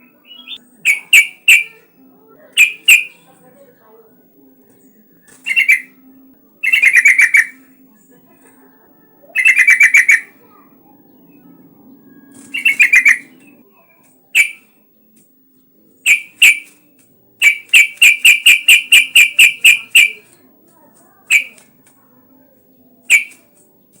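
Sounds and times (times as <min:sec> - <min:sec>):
bird chattering calls: 0:00.0 - 0:01.8, 0:02.6 - 0:03.3, 0:05.3 - 0:06.0, 0:06.6 - 0:07.7, 0:09.3 - 0:10.5, 0:12.3 - 0:13.6, 0:14.3 - 0:14.7, 0:16.0 - 0:16.8, 0:17.4 - 0:20.3, 0:21.3 - 0:21.7, 0:23.0 - 0:23.4.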